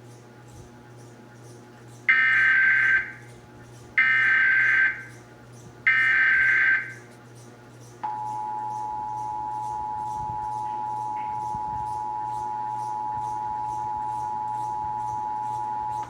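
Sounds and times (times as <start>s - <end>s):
buzzy digital data bursts: 5.9s - 7.0s.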